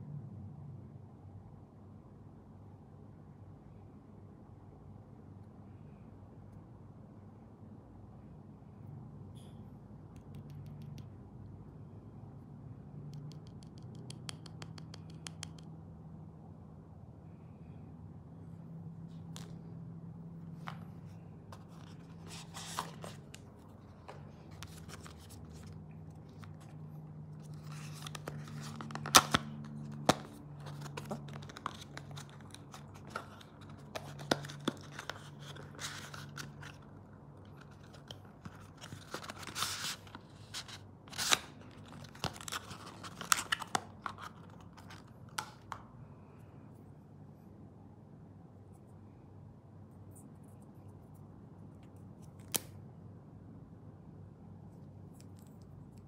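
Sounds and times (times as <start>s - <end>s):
faint low hum: 0.0s - 56.0s
clicks and taps: 10.1s - 11.2s, 13.1s - 15.8s
packaging rustling and tearing: 27.4s - 36.8s, 37.5s - 45.1s.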